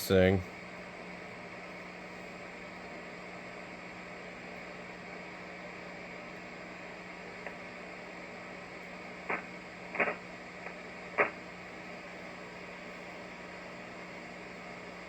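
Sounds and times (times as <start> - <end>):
steady hiss with low hum: 0.0 - 15.0
radio knob clicks: 9.3 - 11.4.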